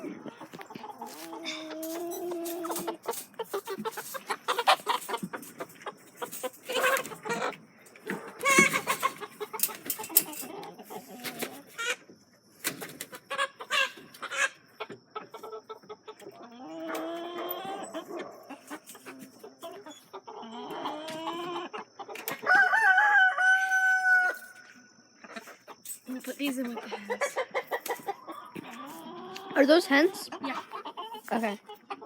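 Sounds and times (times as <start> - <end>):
chickens clucking and squawking: 0.0 - 32.0
rooster crowing: 22.4 - 24.6.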